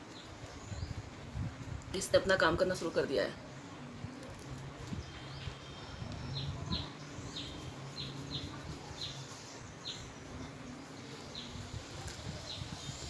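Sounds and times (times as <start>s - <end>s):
small bird chirping: 4.3s - 13.0s.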